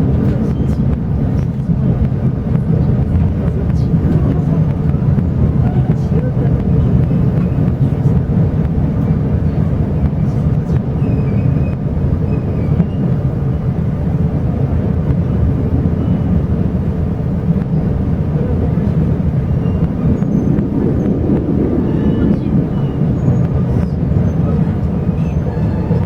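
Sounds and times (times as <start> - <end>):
train carriage rumbling: 0.0 - 26.0.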